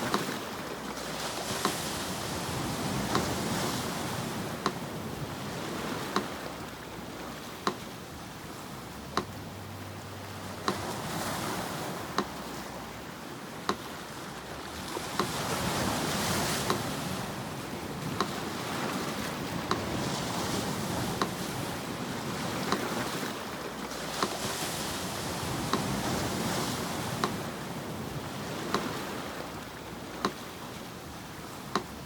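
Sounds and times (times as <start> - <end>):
sea surf washing: 0.0 - 32.0
metronome ticking: 2.5 - 14.0, 14.6 - 21.4, 27.0 - 27.5, 28.6 - 30.6, 31.7 - 32.0.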